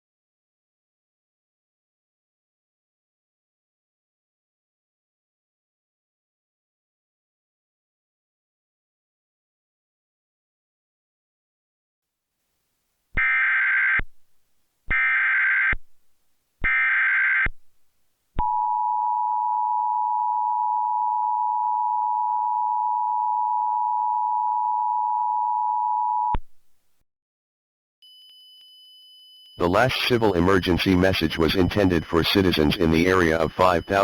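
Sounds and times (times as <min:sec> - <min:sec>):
two-tone attention signal: 0:28.1 - 0:34.0
warbling data tone bursts: 0:29.6 - 0:34.0.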